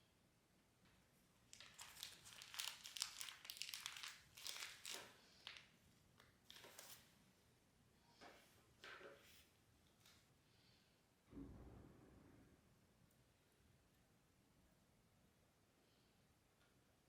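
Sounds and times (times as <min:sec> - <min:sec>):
wrapper crinkling and rustling: 0:01.5 - 0:05.7, 0:06.4 - 0:07.0.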